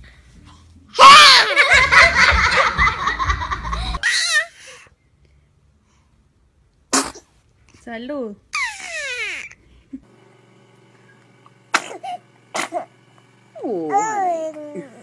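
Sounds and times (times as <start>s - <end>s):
loud laughter: 1.0s - 4.1s.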